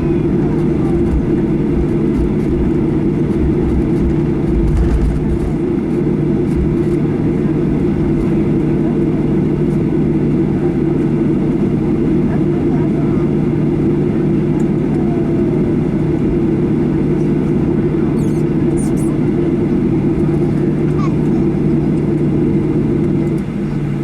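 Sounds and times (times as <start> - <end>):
jet engines idling in cabin: 0.0 - 24.0
low bumps: 0.5 - 7.0.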